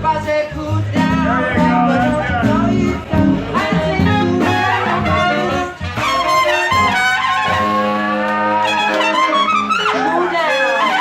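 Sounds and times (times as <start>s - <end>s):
brass horns playing: 0.8s - 11.0s.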